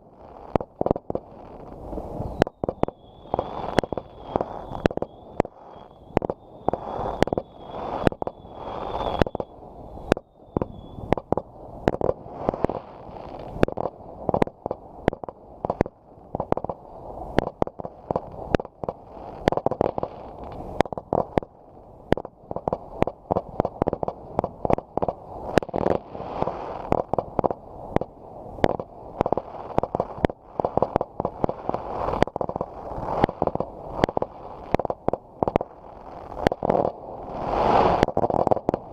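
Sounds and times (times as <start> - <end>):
fireworks bangs and pops: 0.0 - 38.9
rumble of crackle: 0.0 - 38.9.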